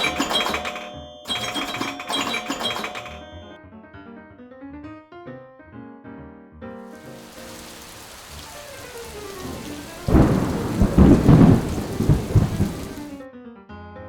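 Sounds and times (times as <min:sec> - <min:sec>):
steady rain hiss: 0:06.9 - 0:13.2
loud thunderclap rumbling: 0:07.1 - 0:13.2.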